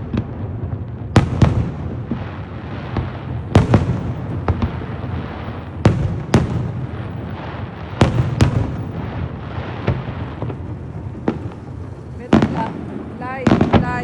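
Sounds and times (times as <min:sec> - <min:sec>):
fireworks bangs: 0:00.0 - 0:14.0
low rumble of bursts: 0:01.6 - 0:14.0.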